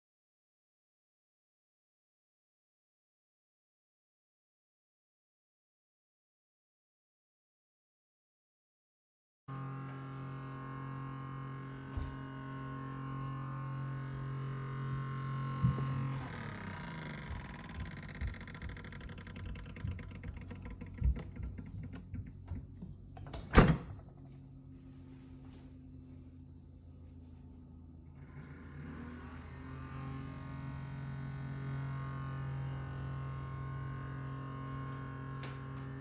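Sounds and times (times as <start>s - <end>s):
refrigerator humming: 9.5s - 36.0s
knocks and clunks: 17.3s - 24.3s.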